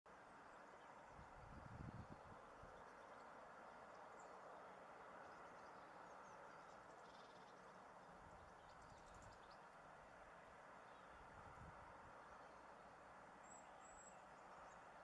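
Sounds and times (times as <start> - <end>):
steady background hiss: 0.1 - 15.0
small birds chirping: 2.6 - 9.8, 12.2 - 15.0.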